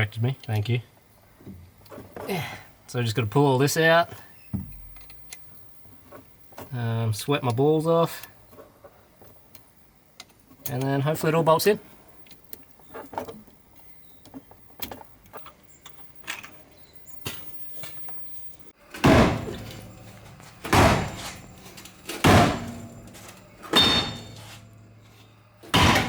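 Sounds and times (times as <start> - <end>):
heavy blows on metal ringing: 19.0 - 26.0.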